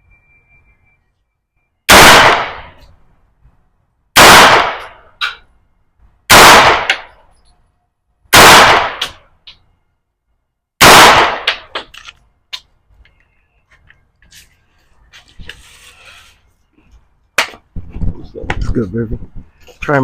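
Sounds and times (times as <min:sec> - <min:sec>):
gunshots with echo: 0:01.9 - 0:02.8, 0:04.2 - 0:05.0, 0:06.3 - 0:07.1, 0:08.3 - 0:09.2, 0:10.8 - 0:11.7.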